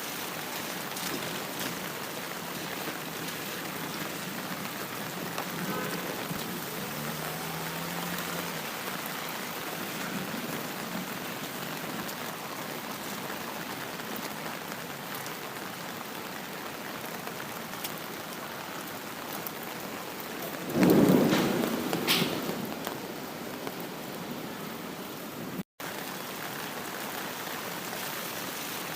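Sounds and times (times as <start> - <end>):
steady rain: 0.0 - 28.9
thunderclap rumbling: 0.8 - 12.0, 20.4 - 24.5.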